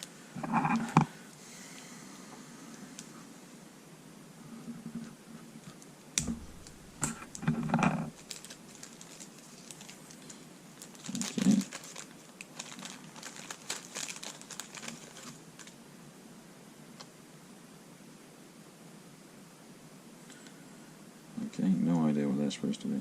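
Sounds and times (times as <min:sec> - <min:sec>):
knocks and rustles: 0:06.2 - 0:09.2
plastic packet crinkling: 0:06.2 - 0:15.8.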